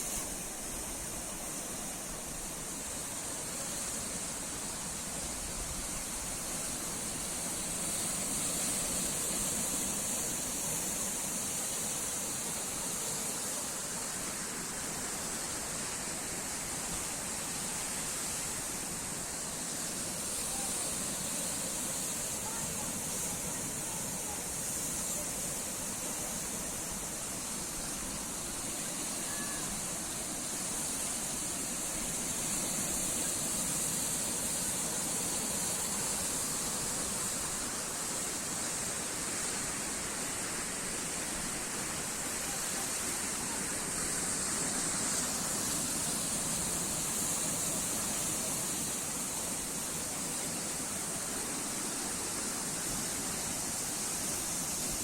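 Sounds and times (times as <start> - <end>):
sea waves washing ashore: 0.0 - 55.0.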